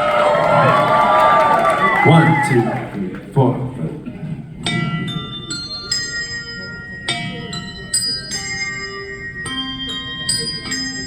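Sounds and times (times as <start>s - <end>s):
handbells playing melody: 4.8s - 11.0s.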